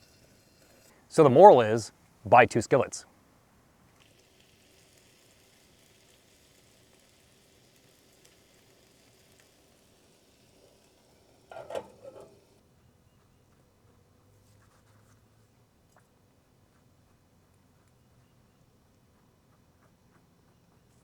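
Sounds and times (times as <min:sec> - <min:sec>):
food sizzling: 0:04.0 - 0:12.6.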